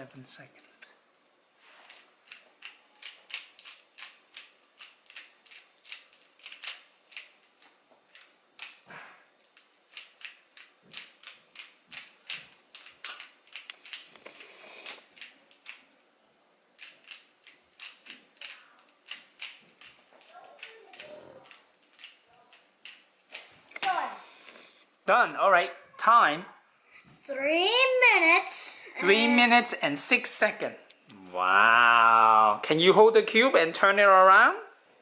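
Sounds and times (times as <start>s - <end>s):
puzzle cube plastic clicks: 1.9s - 8.8s, 9.4s - 15.9s, 16.8s - 23.5s.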